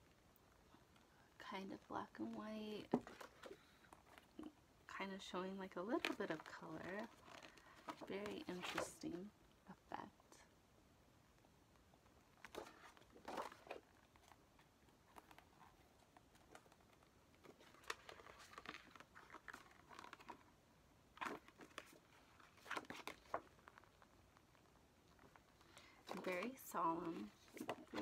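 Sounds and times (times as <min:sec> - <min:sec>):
paper rustling and crinkling: 0:02.8 - 0:04.4, 0:05.9 - 0:09.1, 0:12.4 - 0:28.0.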